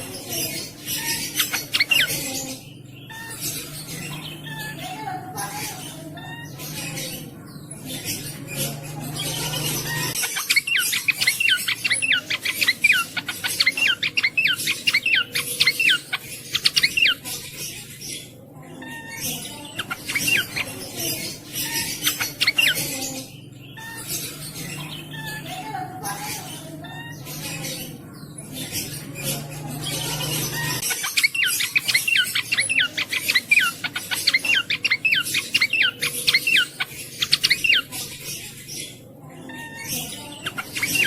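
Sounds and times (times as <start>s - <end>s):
songbird whistling song: 26.8s - 41.0s.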